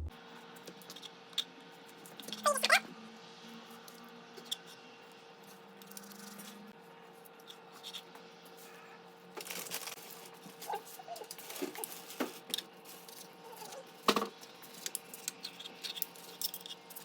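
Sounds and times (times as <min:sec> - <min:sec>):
steady low hum: 0:00.0 - 0:00.6.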